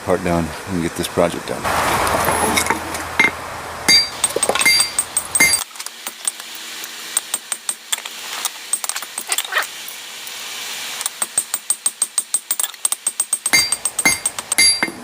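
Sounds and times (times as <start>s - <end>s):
hammer striking steel on anvil: 2.6s - 5.6s, 11.2s - 15.0s.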